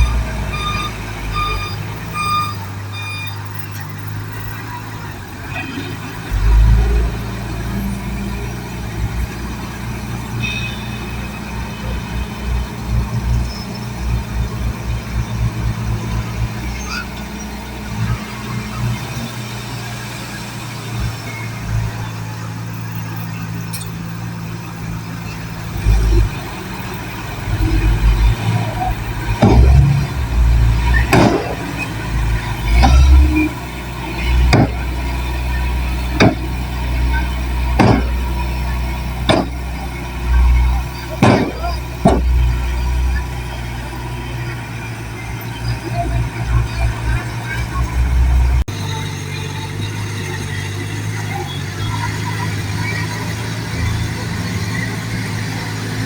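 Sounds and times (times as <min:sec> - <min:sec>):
heavy machine engine rumbling: 0:00.0 - 0:56.0
sharp knocks: 0:29.4 - 0:30.3, 0:31.0 - 0:31.8, 0:34.4 - 0:35.0, 0:36.2 - 0:36.6, 0:37.8 - 0:38.4, 0:39.3 - 0:39.7, 0:41.2 - 0:42.5.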